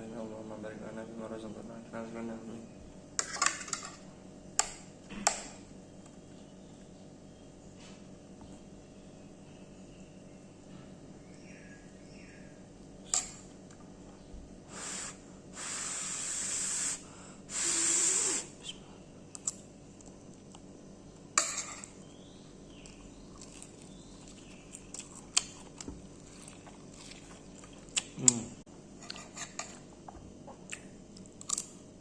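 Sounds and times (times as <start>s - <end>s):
spraying hisses: 14.7s - 18.5s.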